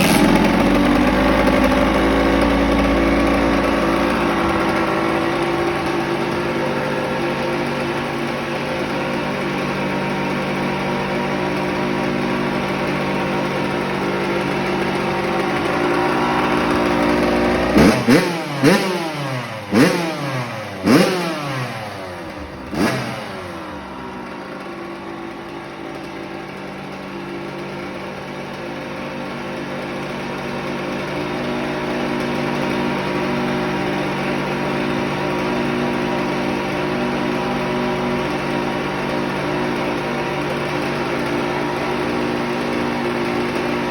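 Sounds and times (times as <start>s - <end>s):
engine throttle blips: 0.0s - 27.0s
two-stroke dirt bike idling: 0.0s - 43.9s.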